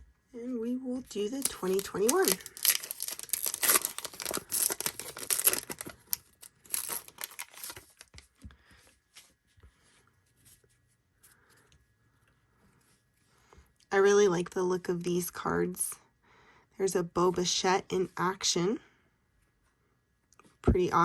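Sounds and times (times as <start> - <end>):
cards being handled: 1.3 - 8.4
wrapper tearing and crinkling: 1.4 - 8.3.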